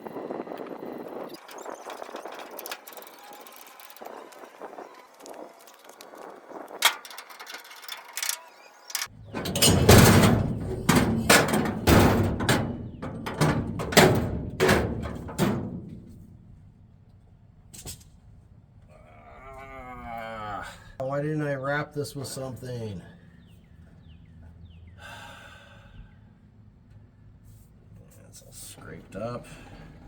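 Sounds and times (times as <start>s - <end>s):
irregular knocks and thuds: 9.3s - 16.5s.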